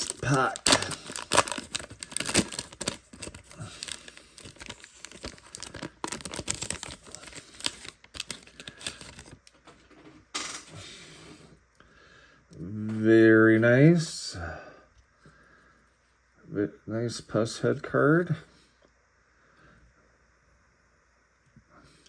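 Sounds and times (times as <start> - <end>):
wax paper wrapper crinkling: 0.0 - 9.6
paper rustle: 0.0 - 9.8.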